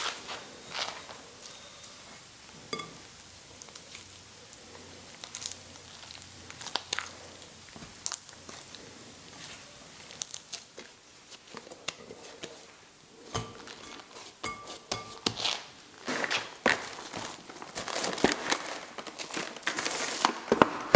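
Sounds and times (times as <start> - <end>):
crinkling: 3.6 - 12.8, 15.4 - 20.9.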